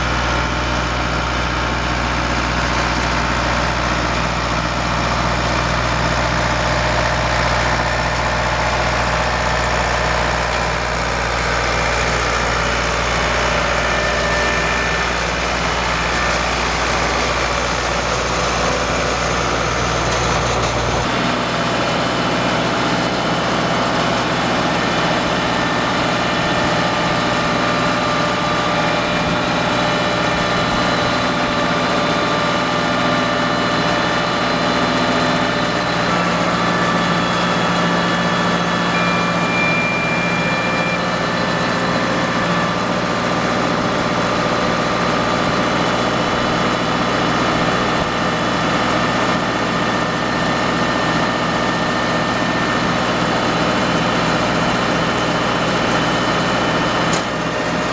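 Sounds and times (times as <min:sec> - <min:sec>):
farm machinery engine running: 0:00.0 - 0:57.9
steady mechanical whine: 0:35.4 - 0:44.1.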